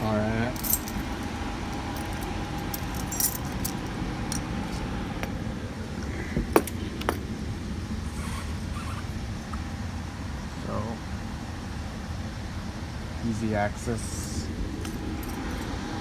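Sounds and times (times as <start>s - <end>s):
light metallic jingling: 0.0s - 5.4s, 14.8s - 15.8s
air handler units humming: 0.0s - 16.0s.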